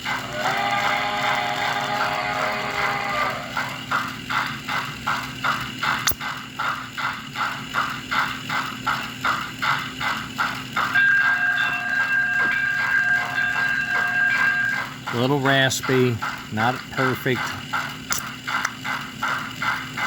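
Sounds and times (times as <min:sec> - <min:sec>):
chime steam whistle: 0:00.0 - 0:03.9, 0:10.9 - 0:15.6
steam locomotive chuffing: 0:00.0 - 0:20.0
sharp click: 0:06.0 - 0:06.3.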